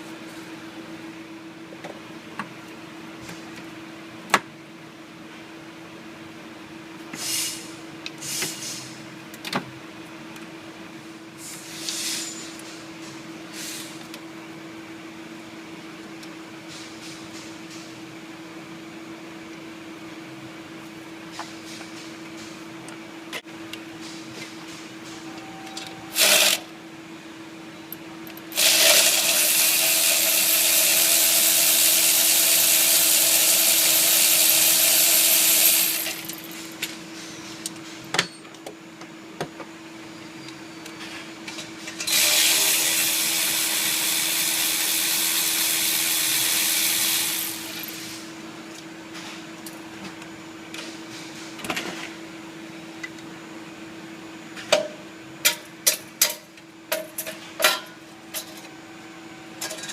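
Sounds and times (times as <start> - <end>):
power tool running: 26.1 - 26.7, 28.5 - 36.8, 42.0 - 48.2.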